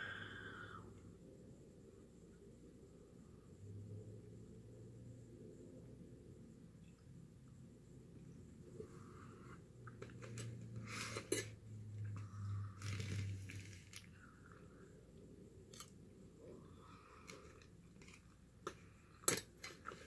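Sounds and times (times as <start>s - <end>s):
low steady hum: 0.0s - 20.0s
chewing and crunching food: 16.7s - 20.0s.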